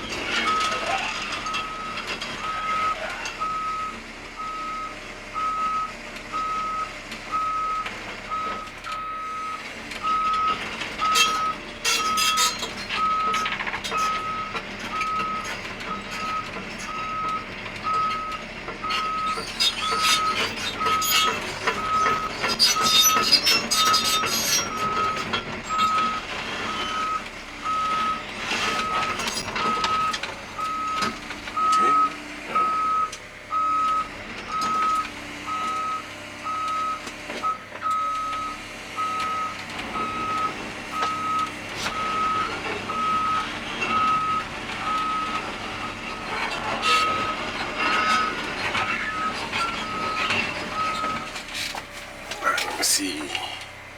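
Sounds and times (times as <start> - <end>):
diesel engine running: 0.0 - 53.9
excavator travel alarm beeping: 0.1 - 53.9
steel tracks clanking: 10.3 - 33.3, 39.2 - 53.9.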